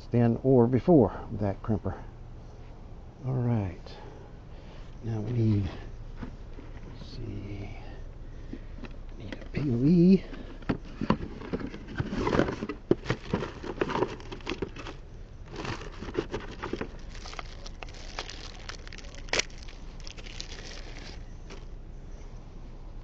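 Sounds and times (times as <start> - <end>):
plastic packaging crinkling: 12.0 - 21.7.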